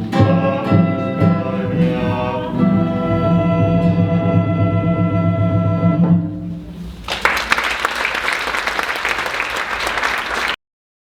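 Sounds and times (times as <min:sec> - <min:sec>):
audience applause: 0:07.0 - 0:10.6.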